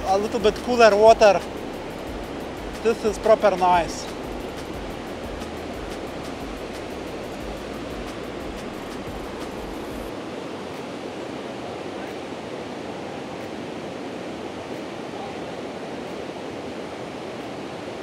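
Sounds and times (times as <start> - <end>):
river water pouring over weir: 0.0 - 18.0.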